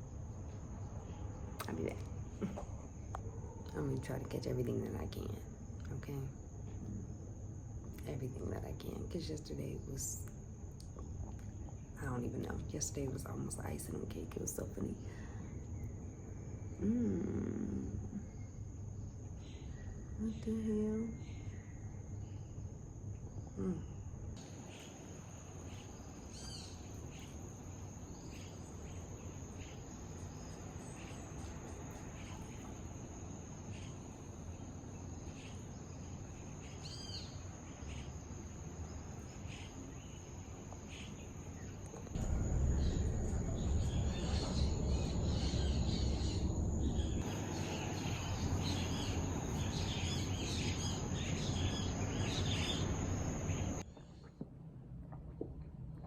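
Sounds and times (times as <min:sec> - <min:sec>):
insects droning: 0:00.0 - 0:53.9
birds chirping: 0:39.4 - 0:54.4
low rumble: 0:41.9 - 0:53.9.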